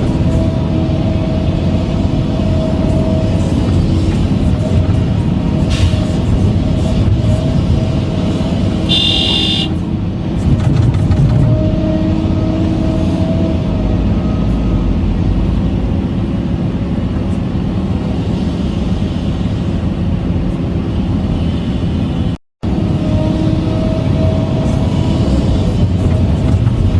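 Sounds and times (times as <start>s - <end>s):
short high-pitched beep: 8.9s - 9.7s.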